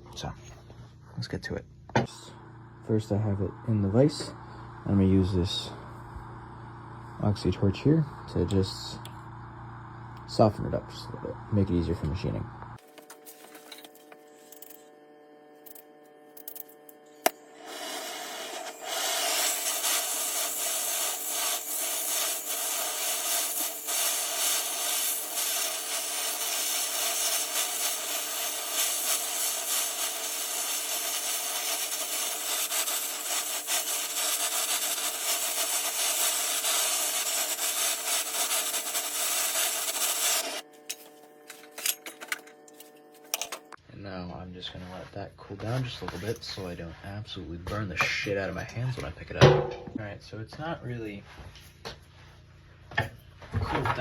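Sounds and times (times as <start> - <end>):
torch flame hissing: 2.1 - 12.0, 17.2 - 40.7.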